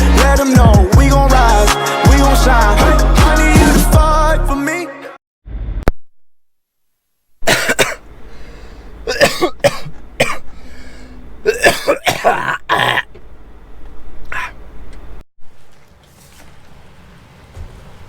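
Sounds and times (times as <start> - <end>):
person clearing throat: 7.4 - 8.0, 9.0 - 10.6, 11.4 - 13.1, 14.3 - 14.6
person coughing: 7.4 - 8.1, 9.0 - 13.1, 14.3 - 14.6.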